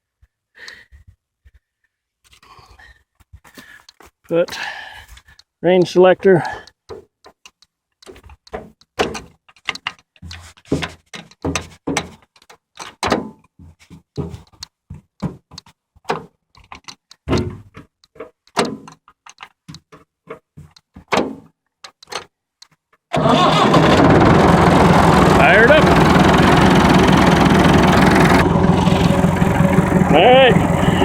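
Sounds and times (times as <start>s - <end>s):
tractor levers clicking and clunking: 6.6s - 13.4s, 14.2s - 24.0s
tractor engine running: 23.1s - 31.0s.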